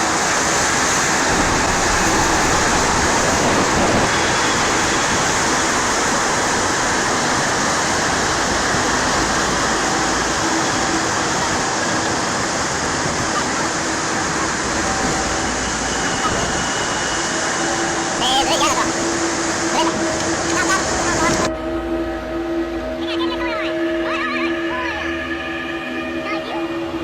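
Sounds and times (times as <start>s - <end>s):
floodwater rushing: 0.0s - 21.5s.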